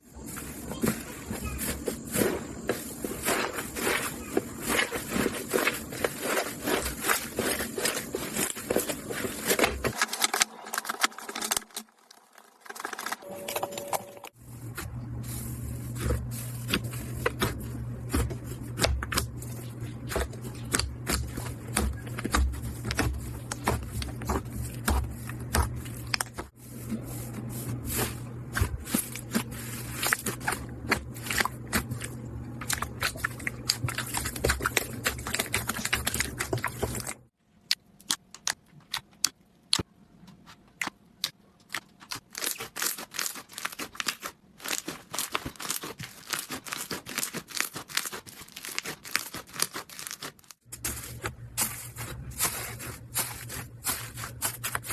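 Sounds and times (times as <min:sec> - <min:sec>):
steady low hum: 0:13.2 - 0:37.4
slime crackling and popping: 0:40.8 - 0:50.9.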